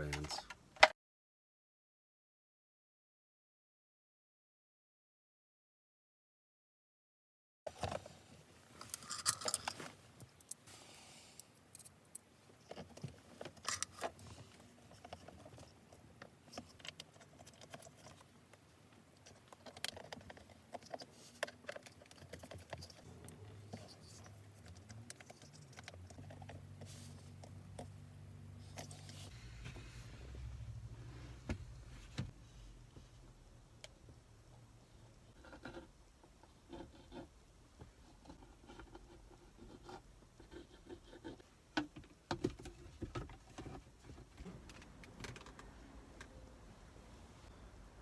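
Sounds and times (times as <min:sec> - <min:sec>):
low steady hum: 0:21.8 - 0:41.8.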